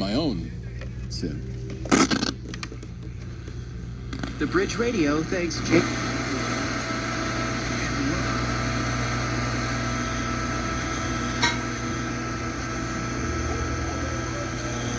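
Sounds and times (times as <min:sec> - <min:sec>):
radio hiss: 0:00.0 - 0:14.9
radio click: 0:11.2 - 0:12.0.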